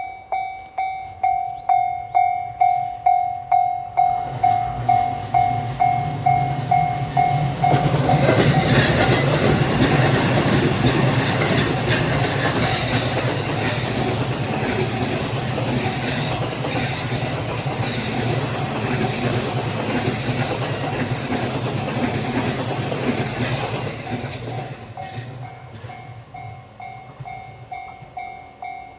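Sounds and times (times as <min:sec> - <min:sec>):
level-crossing bell ringing: 0:00.0 - 0:11.6, 0:18.4 - 0:28.9
train wheels clattering on rails: 0:01.1 - 0:28.9.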